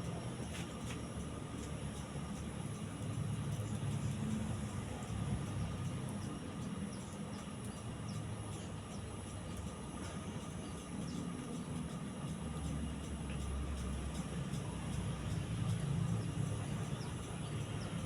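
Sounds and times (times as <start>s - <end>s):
ceiling fan humming: 0.0s - 18.0s.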